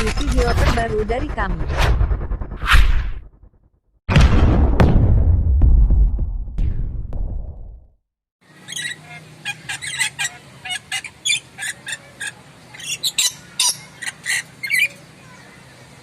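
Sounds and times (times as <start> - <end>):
parrot squawking and screeching: 8.5 - 15.0.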